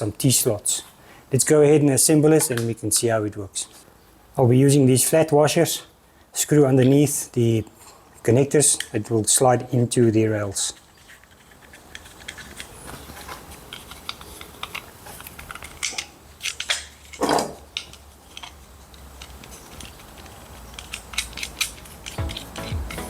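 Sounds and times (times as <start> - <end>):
small parts clicking and tapping: 10.8 - 23.0.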